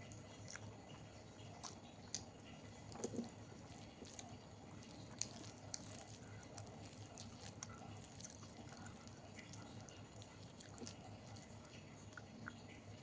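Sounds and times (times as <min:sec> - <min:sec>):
person chewing food: 0:00.0 - 0:13.0.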